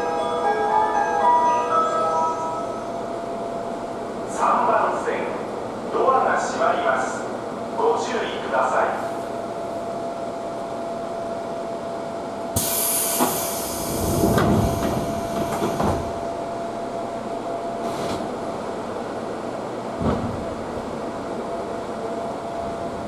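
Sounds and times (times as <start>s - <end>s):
stopped train humming: 8.5s - 23.0s
compressed air hiss: 12.6s - 16.0s
train doors thudding shut: 12.6s - 16.5s, 17.8s - 18.6s, 19.9s - 21.1s.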